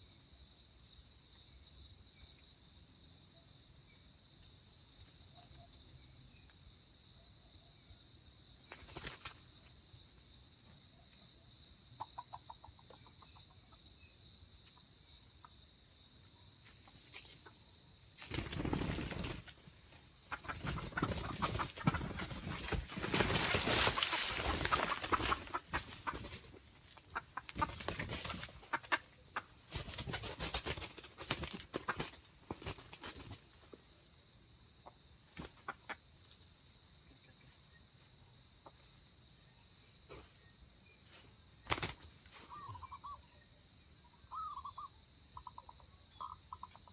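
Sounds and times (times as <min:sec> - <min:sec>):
bird flapping wings and thrashing: 0:08.7 - 0:09.5, 0:18.2 - 0:19.7, 0:20.3 - 0:29.0, 0:29.6 - 0:33.5, 0:41.6 - 0:42.2.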